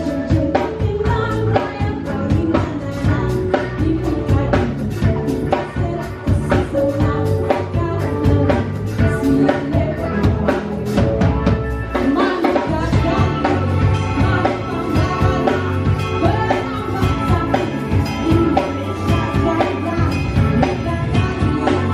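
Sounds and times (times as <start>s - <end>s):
live band music: 0.0s - 21.9s
steady drum beat: 0.0s - 21.9s
person singing: 12.0s - 21.9s.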